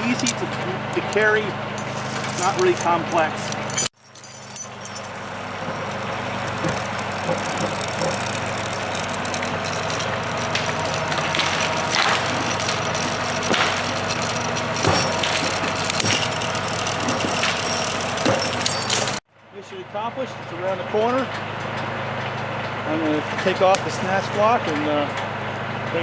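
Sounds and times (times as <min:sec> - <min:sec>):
log dragging: 0:00.0 - 0:03.8, 0:04.7 - 0:19.2
tractor diesel engine under load: 0:00.0 - 0:19.2, 0:20.6 - 0:26.0.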